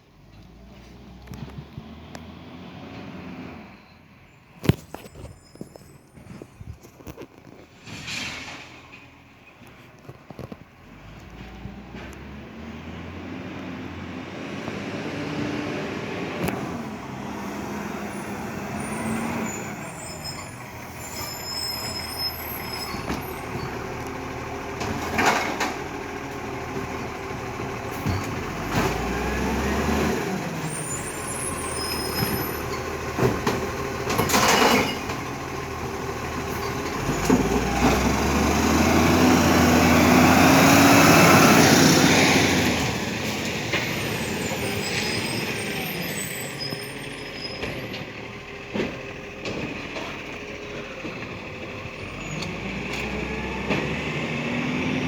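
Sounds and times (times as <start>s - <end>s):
air brake hisses: 7.8s - 8.9s
garbage truck engine running: 16.2s - 55.0s.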